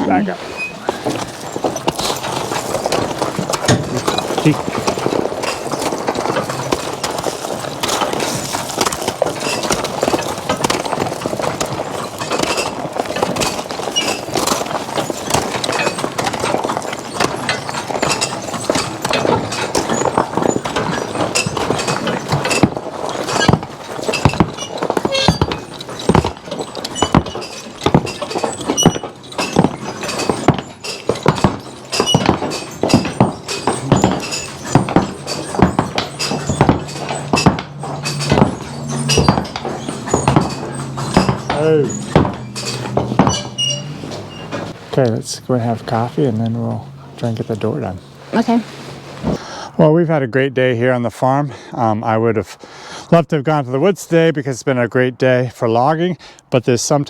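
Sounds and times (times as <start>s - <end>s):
harness and chain clinking: 0.0s - 44.9s
horse hooves clopping: 0.0s - 49.4s
wooden knocks rattling: 0.0s - 49.4s.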